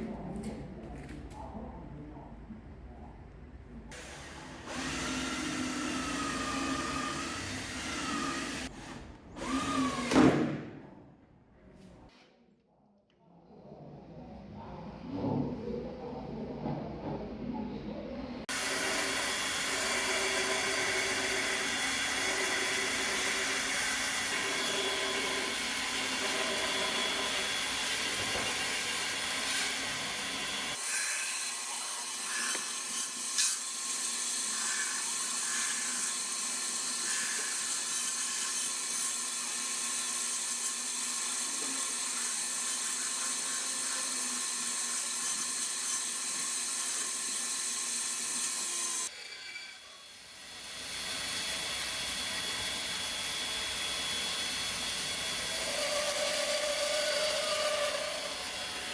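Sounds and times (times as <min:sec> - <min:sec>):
electric drill whining: 0:04.0 - 0:10.2, 0:18.5 - 0:58.9
wood being turned on lathe: 0:04.7 - 0:08.7, 0:18.5 - 0:58.9.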